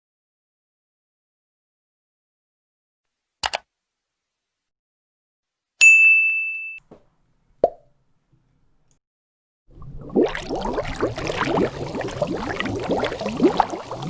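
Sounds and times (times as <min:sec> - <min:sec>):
bright ringing ding: 0:05.8 - 0:06.8
bubble pops: 0:07.6 - 0:07.9, 0:09.7 - 0:14.0
short plop: 0:07.6 - 0:07.9.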